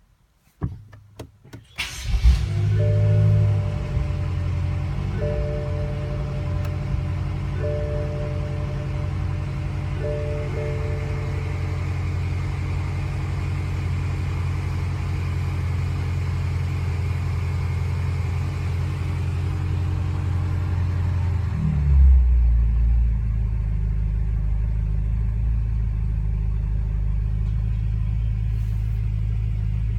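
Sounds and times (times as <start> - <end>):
car engine misfiring: 0.9 - 16.0.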